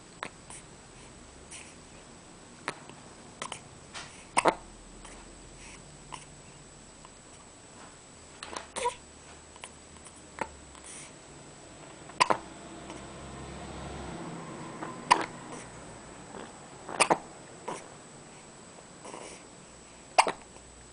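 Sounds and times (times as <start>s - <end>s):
short sharp hiccups: 4.4s - 4.6s, 12.2s - 12.4s, 15.1s - 15.3s, 16.9s - 17.9s, 20.2s - 20.5s.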